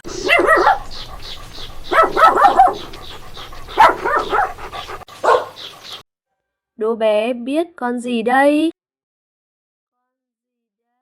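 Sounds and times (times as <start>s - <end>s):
dog barking: 0.0s - 5.8s.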